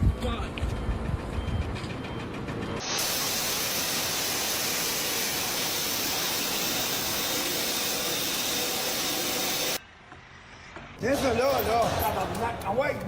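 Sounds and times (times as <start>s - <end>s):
loud rushing hiss: 2.8s - 9.8s.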